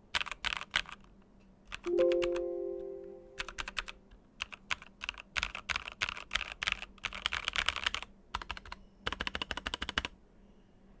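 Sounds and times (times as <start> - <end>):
mechanical keyboard typing: 0.1 - 1.1, 1.7 - 2.5, 3.4 - 10.2.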